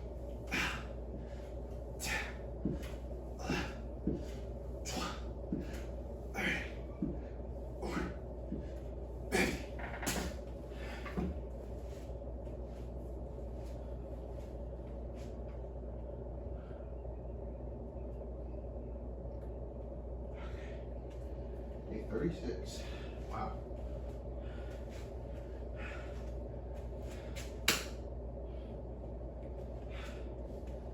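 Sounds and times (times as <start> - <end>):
steady low hum: 0.0 - 30.9
man breathing hard: 0.3 - 11.9, 20.3 - 21.6, 22.7 - 27.6, 29.7 - 30.7.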